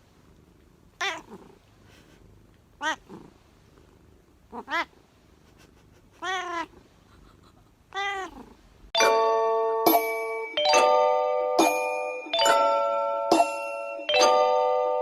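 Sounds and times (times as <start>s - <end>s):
cat meowing: 1.0s - 1.4s, 2.8s - 3.1s, 4.5s - 4.9s, 6.2s - 6.8s, 7.9s - 8.5s
bright ringing chime: 9.0s - 15.0s.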